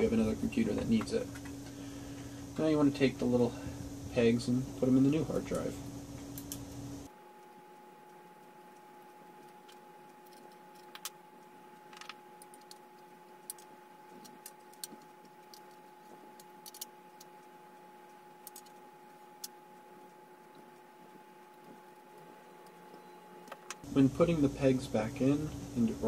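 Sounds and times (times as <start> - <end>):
faint steady hum: 0.0 - 26.0
screws clicking and tapping: 13.4 - 17.3, 18.4 - 18.8.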